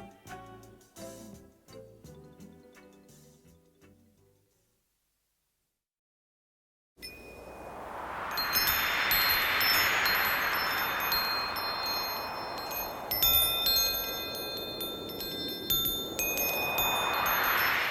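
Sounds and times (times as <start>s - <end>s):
wind chimes tinkling: 7.0s - 7.6s, 8.3s - 17.9s
wind rushing: 7.1s - 17.9s.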